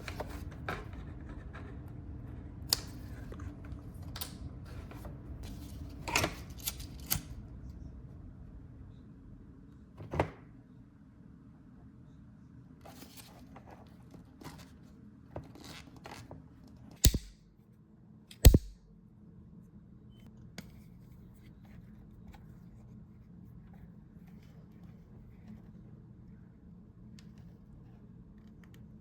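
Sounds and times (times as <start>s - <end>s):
tool knocking on leather: 18.5s - 18.8s.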